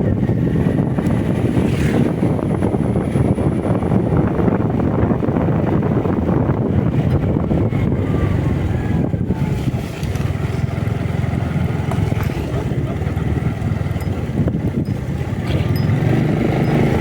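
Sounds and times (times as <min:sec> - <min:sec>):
motorcycle engine rumble: 0:00.0 - 0:17.0
road noise: 0:00.0 - 0:17.0.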